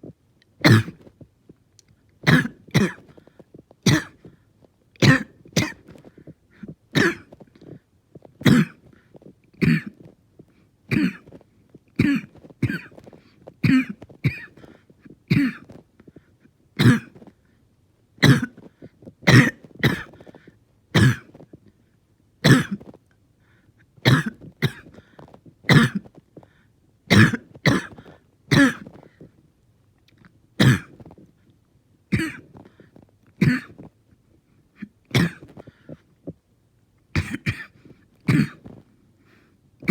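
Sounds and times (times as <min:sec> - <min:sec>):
person coughing harshly: 0:00.6 - 0:01.1, 0:02.3 - 0:03.2, 0:03.8 - 0:04.3, 0:05.0 - 0:06.3, 0:06.9 - 0:07.4, 0:08.4 - 0:08.9, 0:09.6 - 0:10.1, 0:10.9 - 0:11.4, 0:12.0 - 0:15.8, 0:16.8 - 0:17.2, 0:18.2 - 0:18.7, 0:19.3 - 0:20.3, 0:21.0 - 0:21.4, 0:22.4 - 0:22.9, 0:24.0 - 0:25.0, 0:25.7 - 0:26.1, 0:27.1 - 0:29.0, 0:30.6 - 0:31.1, 0:32.1 - 0:32.6, 0:33.4 - 0:33.8, 0:34.8 - 0:35.6, 0:37.2 - 0:38.8
catching breath: 0:35.6 - 0:36.1.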